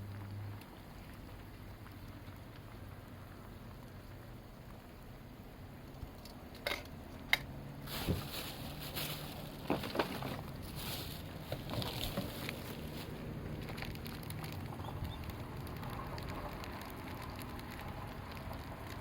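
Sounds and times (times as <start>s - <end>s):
wood fire crackling and popping: 0.0s - 19.0s
fire hiss: 7.8s - 9.6s.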